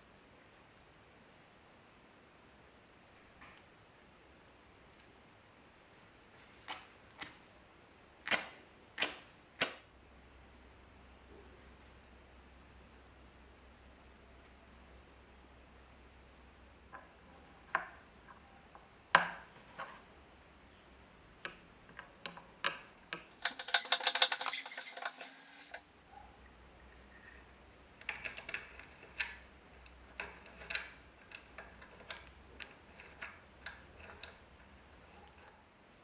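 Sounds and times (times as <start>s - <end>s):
small metal parts clicking: 22.2s - 25.8s, 28.0s - 34.8s
rattling run of clicks: 23.2s - 25.8s.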